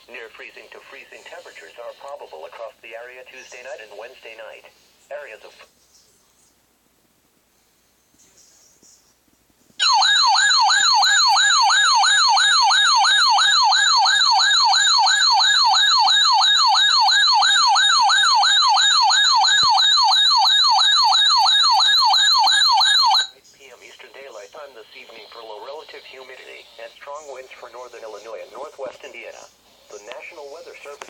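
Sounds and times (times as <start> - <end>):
warbling radio alarm siren: 9.8 - 23.4, 25.0 - 28.9.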